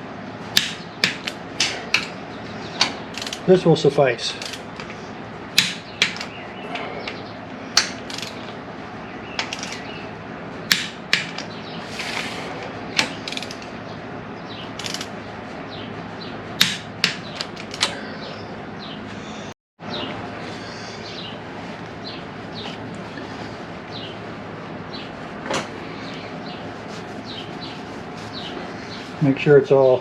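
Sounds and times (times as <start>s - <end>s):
torque wrench clicking: 2.8s - 3.5s, 4.4s - 4.6s, 7.8s - 8.4s, 13.0s - 13.7s, 14.8s - 15.1s.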